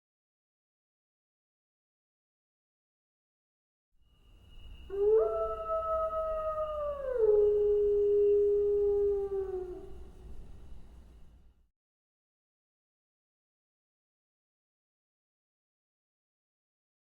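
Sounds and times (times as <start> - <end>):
dog howling: 4.9 - 10.2.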